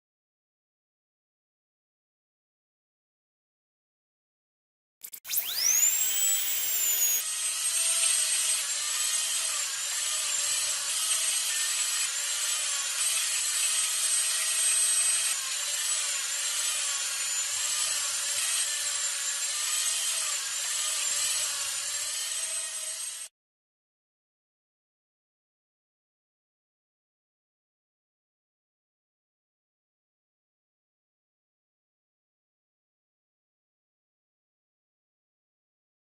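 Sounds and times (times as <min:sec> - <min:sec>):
dentist's drill whining: 0:05.0 - 0:23.3.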